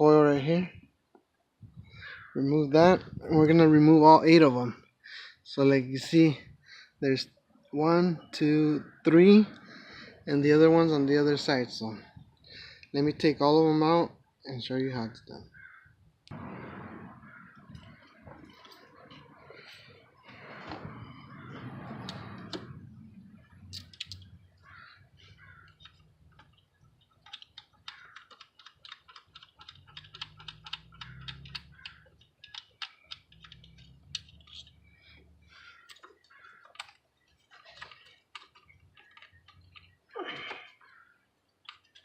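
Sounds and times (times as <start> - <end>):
low rumbling handling noise: 16.3 - 27.2.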